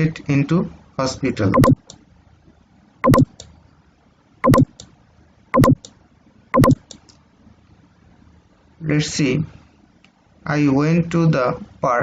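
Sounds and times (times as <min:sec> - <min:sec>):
sharp clicks: 0:01.6 - 0:02.0, 0:03.1 - 0:03.5, 0:04.4 - 0:04.9, 0:05.6 - 0:06.0, 0:06.6 - 0:07.0.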